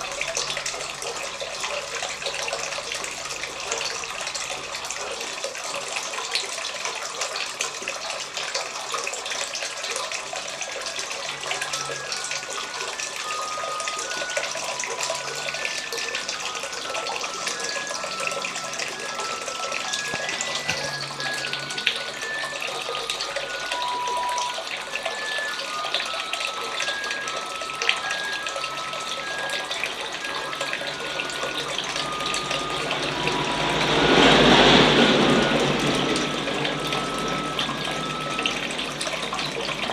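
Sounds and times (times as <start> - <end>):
fountain water splashing: 0.0 - 39.9
faint short high tones: 11.5 - 39.9.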